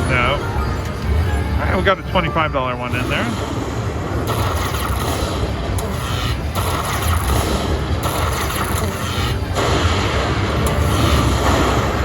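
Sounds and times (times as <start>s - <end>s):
slot machine game music: 0.0s - 12.0s
slot machine spin sound effects: 0.0s - 12.0s
steady low hum: 0.0s - 12.0s.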